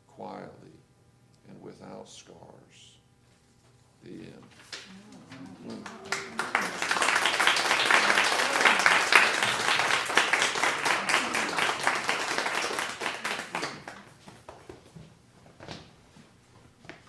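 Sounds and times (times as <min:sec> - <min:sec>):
crowd applauding: 0:04.7 - 0:14.2.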